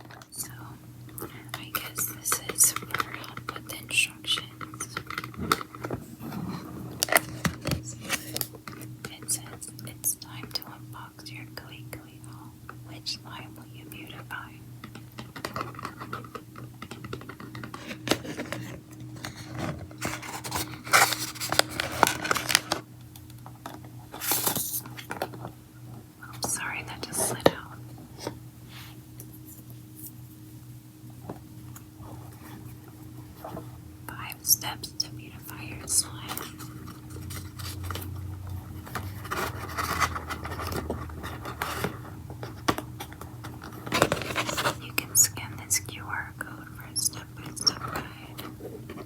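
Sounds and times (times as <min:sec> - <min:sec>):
box and cards handled rustling: 0:02.1 - 0:09.6, 0:14.9 - 0:25.6, 0:35.5 - 0:45.2.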